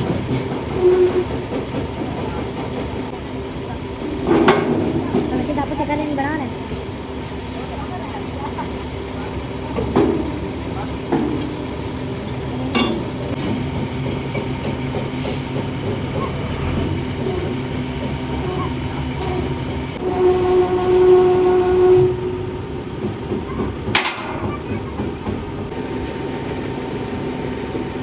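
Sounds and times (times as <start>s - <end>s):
engine rumble: 0.0s - 28.0s
heavy vehicle horn: 20.0s - 22.6s.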